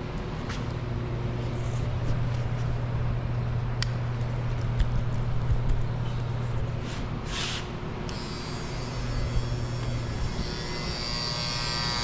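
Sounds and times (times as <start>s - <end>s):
high whine: 8.0s - 12.0s.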